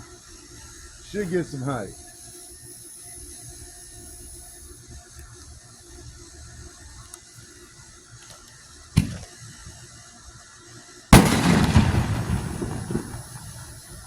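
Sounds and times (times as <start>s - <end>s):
mortar launch thump: 9.0s - 9.3s
firework shell bang: 9.0s - 9.4s, 11.2s - 14.0s.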